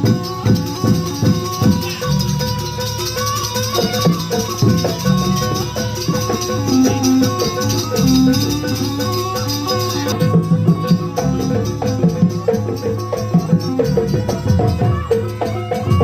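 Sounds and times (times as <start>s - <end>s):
drum strokes: 0.0s - 16.0s
held tones: 0.0s - 16.0s
rattling percussion: 0.0s - 16.0s.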